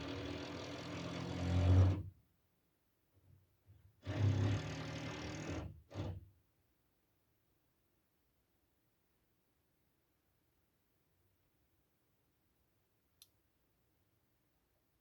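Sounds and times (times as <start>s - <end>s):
power drill behind a wall: 0.0s - 2.1s, 3.7s - 6.4s.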